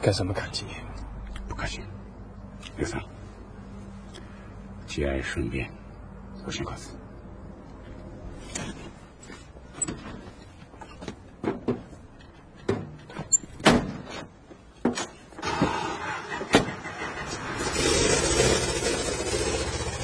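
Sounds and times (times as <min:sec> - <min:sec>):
car engine running: 0:15.4 - 0:20.0.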